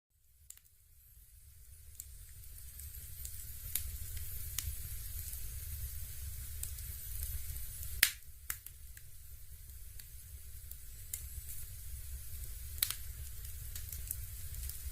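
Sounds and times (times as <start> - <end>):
faint hiss: 0.2 - 14.9
fire crackling and popping: 0.2 - 14.9
low fire rumble: 0.3 - 14.9.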